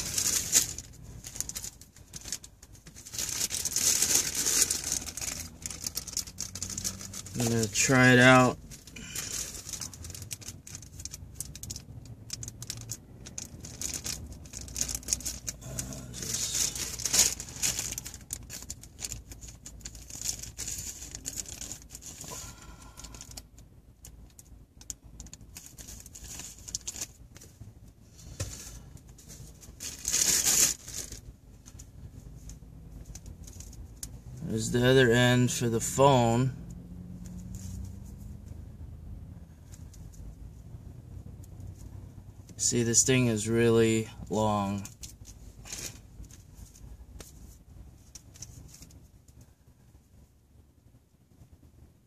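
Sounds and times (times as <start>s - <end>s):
plastic packaging rustling: 0.0s - 23.4s, 24.3s - 27.6s, 28.2s - 34.7s.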